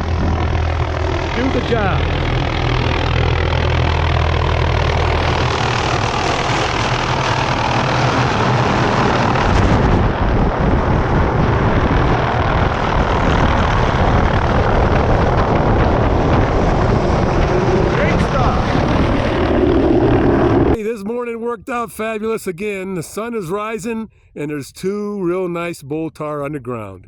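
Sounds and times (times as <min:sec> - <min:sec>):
helicopter rotor and engine: 0:00.0 - 0:20.8.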